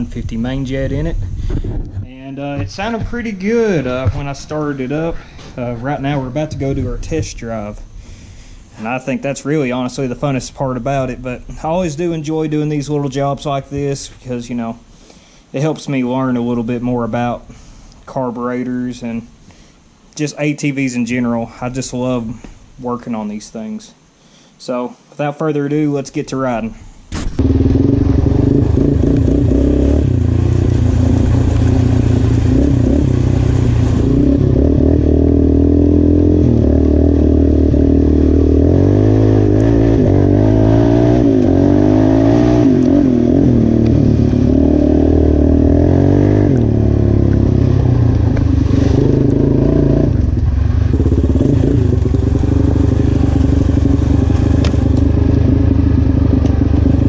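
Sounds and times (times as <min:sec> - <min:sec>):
atv engine revving: 0:27.1 - 0:57.0.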